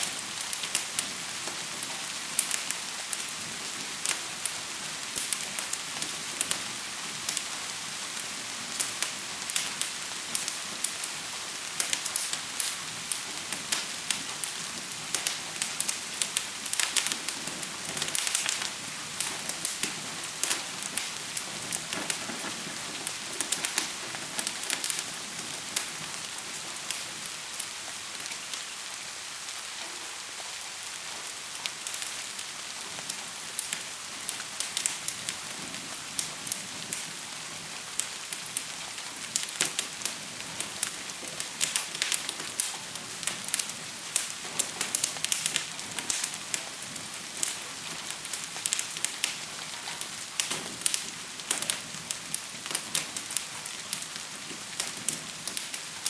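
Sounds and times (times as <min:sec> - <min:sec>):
gentle rain hiss: 0:00.0 - 0:56.0
wood fire crackling and popping: 0:00.0 - 0:56.0.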